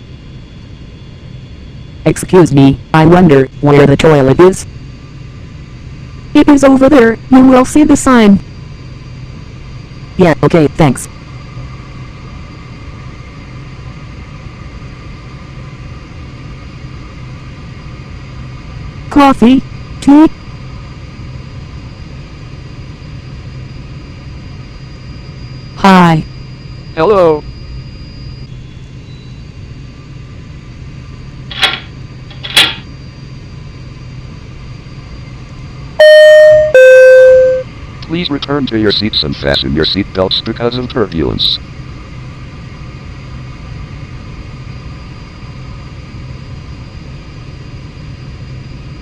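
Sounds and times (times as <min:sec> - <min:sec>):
airliner cabin drone: 0:00.0 - 0:49.0
airliner cabin hum: 0:29.9 - 0:40.6.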